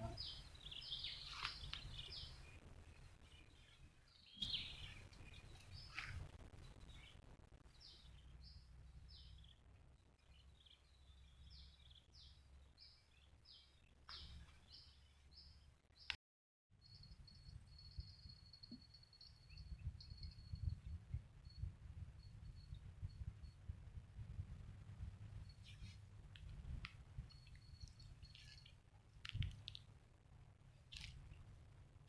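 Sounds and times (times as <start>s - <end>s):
bird chirping: 0.0s - 16.1s, 27.2s - 28.8s.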